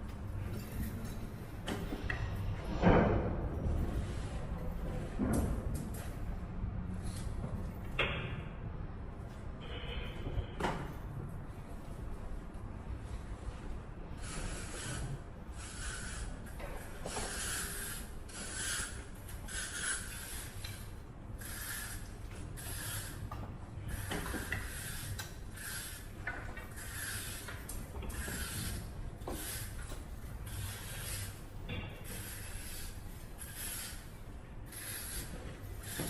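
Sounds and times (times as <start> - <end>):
rasping scraping strokes: 14.2 - 36.0.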